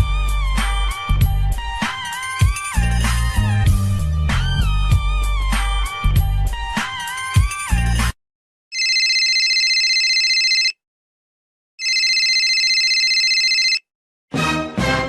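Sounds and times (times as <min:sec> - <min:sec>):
telephone ringing: 0:08.7 - 0:10.8, 0:11.8 - 0:13.9.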